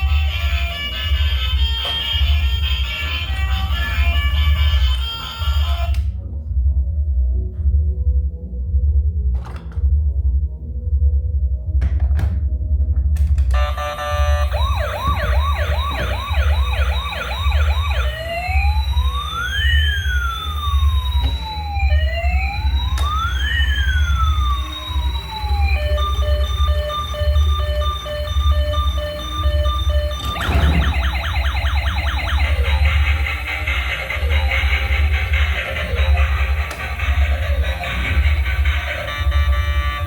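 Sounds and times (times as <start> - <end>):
toy siren yelping and wailing: 0.0 - 6.0, 13.6 - 40.0
music with heavy beat: 0.0 - 6.8, 12.8 - 40.0
steady low hum: 5.6 - 19.5.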